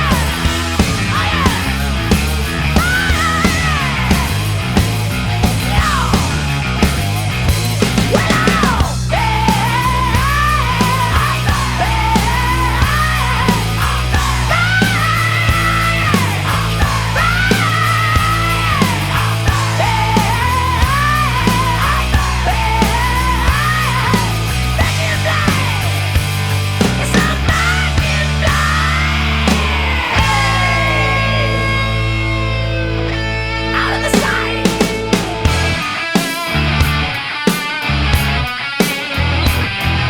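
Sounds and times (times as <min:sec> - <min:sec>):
driving bass line: 0:00.0 - 0:40.0
rock music: 0:00.0 - 0:40.0
bending lead melody: 0:26.0 - 0:37.2.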